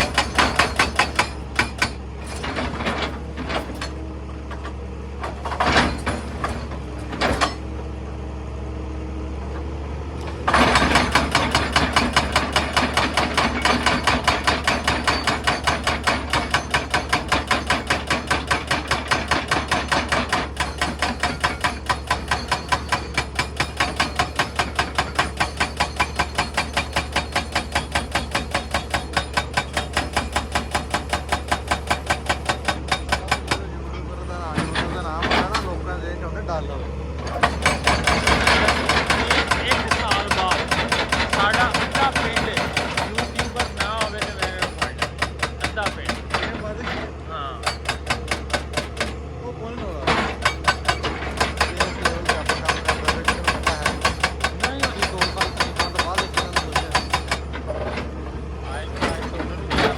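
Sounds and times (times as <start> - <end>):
hydraulic breaker hammering stone: 0.0 - 4.0, 5.2 - 7.7, 10.4 - 35.8, 37.2 - 58.1, 58.7 - 59.9
diesel engine hum: 3.1 - 12.6, 32.8 - 51.4.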